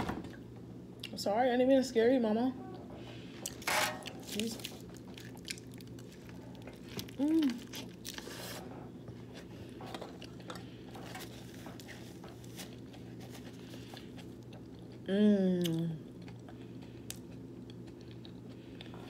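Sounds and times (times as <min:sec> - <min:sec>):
chewing: 0:03.4 - 0:08.2, 0:11.8 - 0:19.0.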